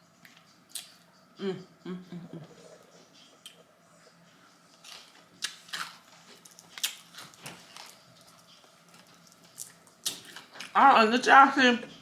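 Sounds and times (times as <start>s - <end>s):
wet chewing sounds: 4.7s - 10.7s.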